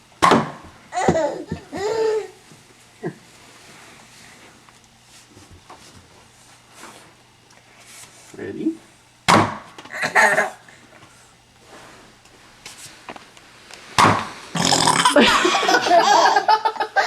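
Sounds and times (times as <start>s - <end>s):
baby burping: 14.6s - 15.2s
laughter: 15.1s - 17.0s.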